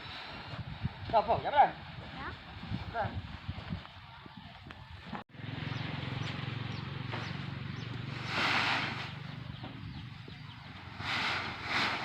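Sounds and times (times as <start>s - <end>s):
engine humming with hiss: 5.4s - 12.0s.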